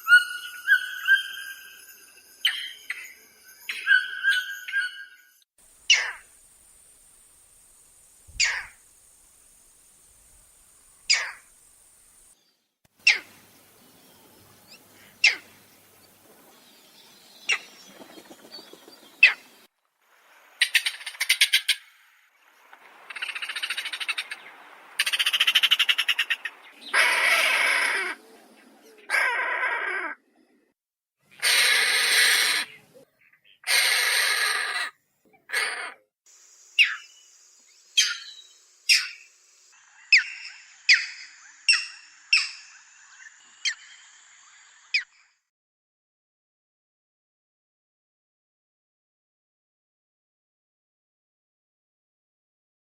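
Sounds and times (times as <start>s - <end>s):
heron rasping squawks: 25.0s - 28.2s, 31.4s - 32.7s, 33.6s - 34.9s.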